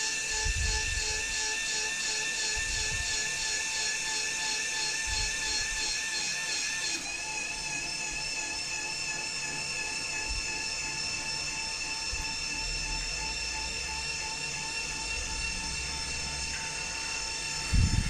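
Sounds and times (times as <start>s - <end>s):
machine high-pitched whine: 0.0s - 18.0s
low hum: 11.6s - 18.0s.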